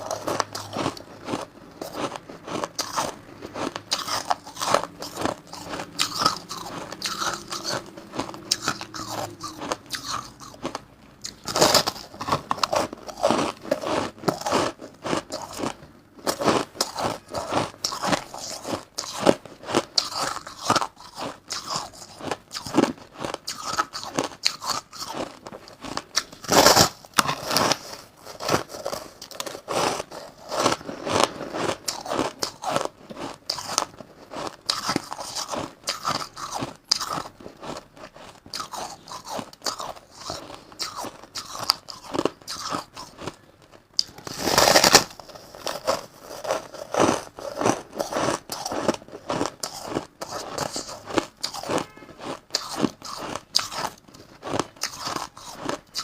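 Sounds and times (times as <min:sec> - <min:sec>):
person chewing crushed ice: 0:00.0 - 0:56.0.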